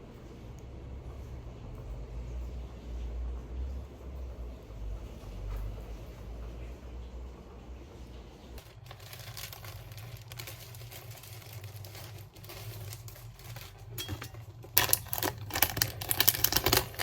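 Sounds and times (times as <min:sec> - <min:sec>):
small objects rustling and clicking: 0:08.6 - 0:17.0.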